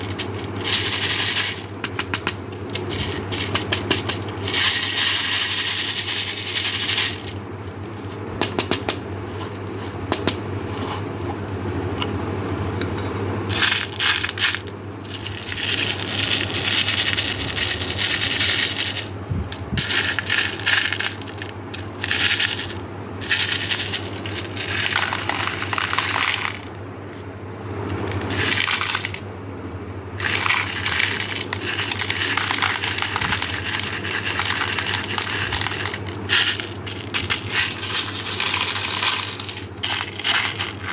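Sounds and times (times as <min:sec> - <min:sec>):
steady low hum: 0:00.0 - 0:40.9
candies clattering into plastic container: 0:19.8 - 0:26.7, 0:28.2 - 0:29.2, 0:30.2 - 0:40.9.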